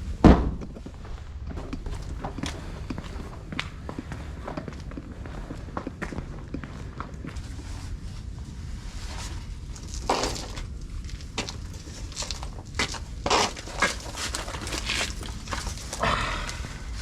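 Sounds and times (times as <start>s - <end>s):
heavy scuffs: 0.0s - 8.4s
footsteps crunching on rough ground: 0.0s - 17.0s
steady low rumble: 0.0s - 17.0s.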